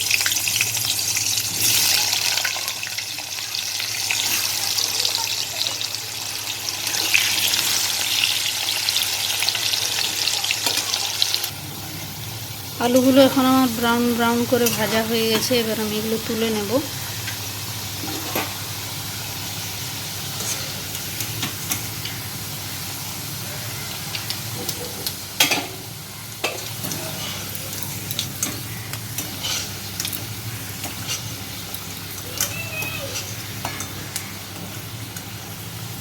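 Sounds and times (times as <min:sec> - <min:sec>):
potatoes sizzling in oil: 0:00.0 - 0:36.0
utensil clinking and scraping pan: 0:26.4 - 0:30.2, 0:30.8 - 0:31.4.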